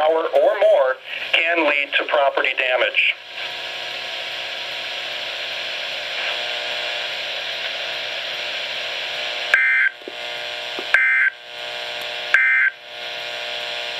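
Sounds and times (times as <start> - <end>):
radio static hiss: 0.0 - 13.9
two-tone digital data bursts: 9.6 - 10.0, 11.0 - 11.4, 12.4 - 12.8.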